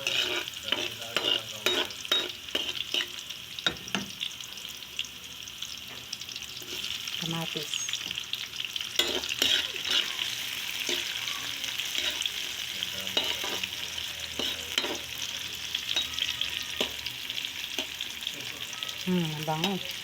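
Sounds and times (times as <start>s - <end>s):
utensil scraping a pan: 0.0s - 3.2s, 9.0s - 17.0s
food sizzling in oil: 0.0s - 20.0s.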